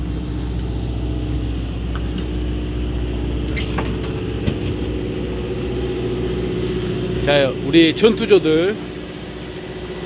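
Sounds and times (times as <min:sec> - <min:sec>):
boat engine idling: 0:00.0 - 0:10.0.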